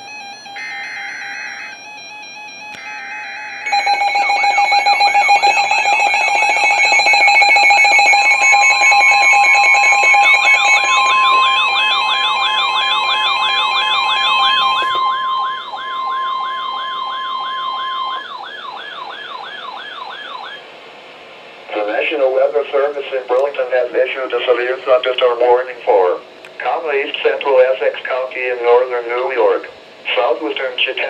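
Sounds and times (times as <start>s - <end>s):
steady warning alarm tone: 0.0s - 20.7s
warbling siren-like tones: 2.9s - 20.7s
rapid beeping tones: 3.7s - 20.6s.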